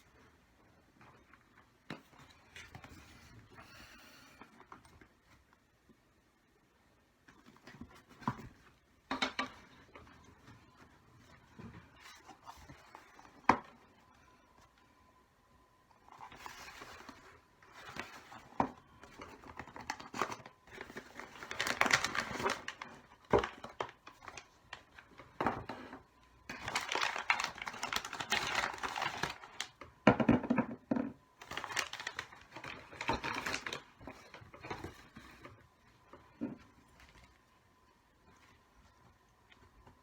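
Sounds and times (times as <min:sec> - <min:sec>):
wrapping crinkling: 0:16.0 - 0:29.9, 0:31.4 - 0:40.0.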